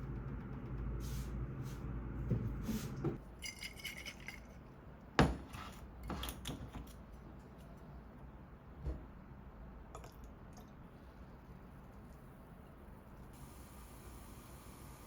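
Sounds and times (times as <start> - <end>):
small metal objects jingling: 3.4 - 4.6.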